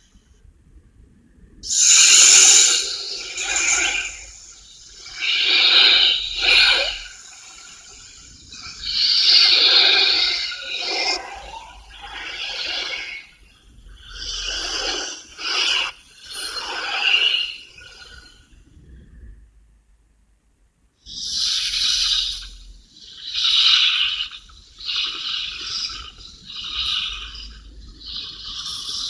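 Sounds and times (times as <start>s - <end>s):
breathy creature hisses and snorts: 1.6s - 13.4s, 14.0s - 18.1s, 23.0s - 29.0s.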